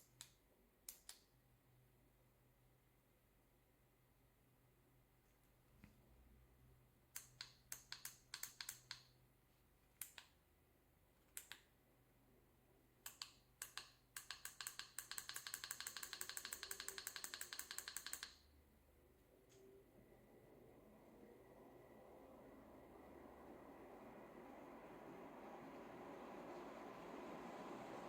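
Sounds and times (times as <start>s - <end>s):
sharp clicks: 0.0s - 1.3s, 7.2s - 9.1s, 11.2s - 11.7s, 13.0s - 18.5s.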